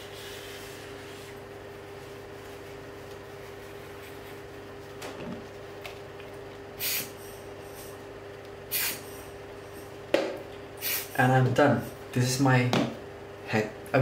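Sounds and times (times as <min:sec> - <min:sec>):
steady low hum: 0:00.0 - 0:14.0
hissing puffs of air: 0:06.8 - 0:08.0, 0:08.7 - 0:09.9, 0:10.8 - 0:11.2.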